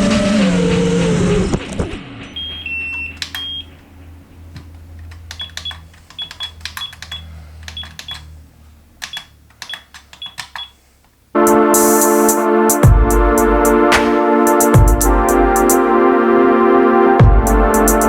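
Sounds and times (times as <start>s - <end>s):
sharp button clicks: 2.4s - 3.7s
short high electronic beeps: 2.4s - 3.8s, 5.4s - 7.2s.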